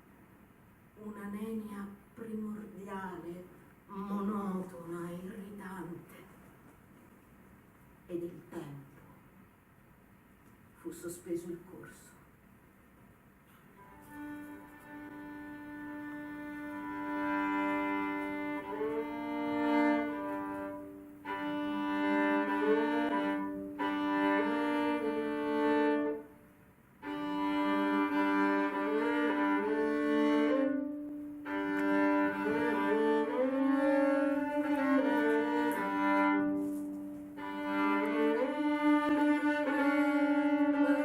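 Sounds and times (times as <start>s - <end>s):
solo violin melody: 13.8s - 26.4s, 27.0s - 41.0s.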